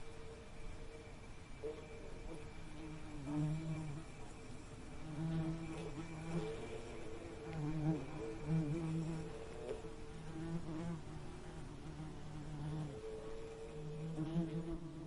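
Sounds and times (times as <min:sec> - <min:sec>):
bee buzzing in flight: 0:01.6 - 0:15.0.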